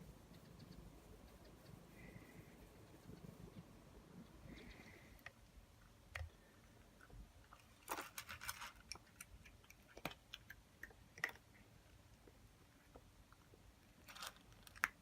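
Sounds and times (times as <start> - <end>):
cat chewing crunchy food: 5.2 - 15.0.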